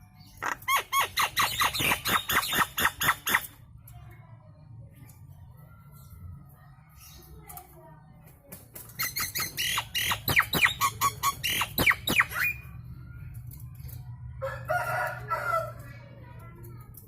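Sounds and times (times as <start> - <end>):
bird whistling calls: 9.0 - 12.7.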